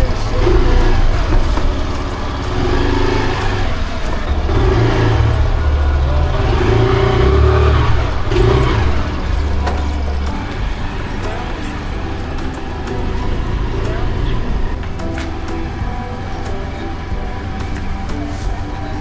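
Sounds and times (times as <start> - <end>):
road noise: 0.0 - 19.0
vehicle engine rumble: 0.0 - 19.0.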